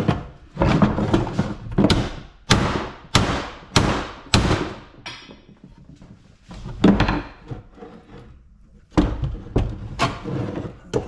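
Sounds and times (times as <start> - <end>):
hammer striking scrap metal: 1.9 - 5.5.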